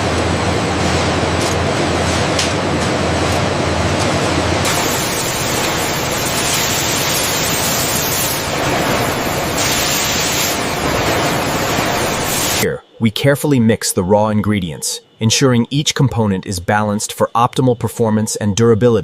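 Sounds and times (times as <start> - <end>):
loud steady hissing noise: 0.0 - 18.1.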